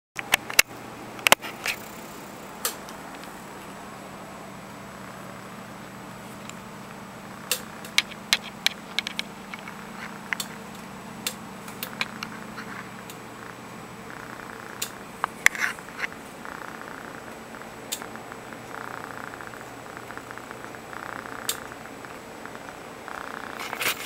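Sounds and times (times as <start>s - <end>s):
pet snoring: 4.9s - 5.6s, 7.2s - 10.6s, 11.9s - 24.0s
sharp clicks and taps: 7.5s - 10.6s, 11.2s - 12.4s.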